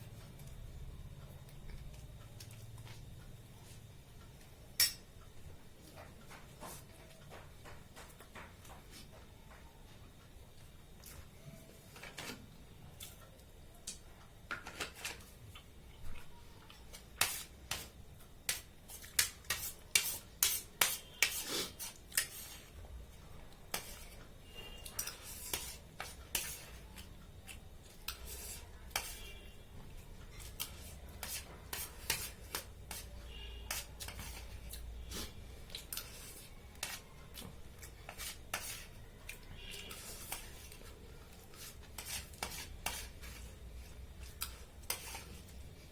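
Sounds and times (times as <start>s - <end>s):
cutlery clinking on a plate: 4.8s - 5.1s.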